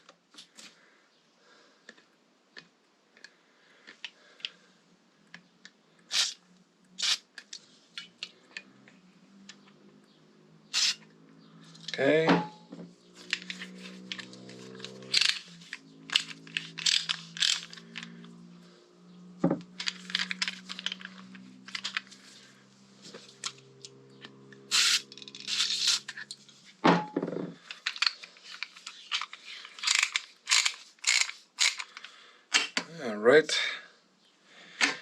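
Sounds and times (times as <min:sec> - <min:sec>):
metal tools clinking: 0:13.2 - 0:18.1, 0:19.8 - 0:22.2, 0:27.7 - 0:31.8.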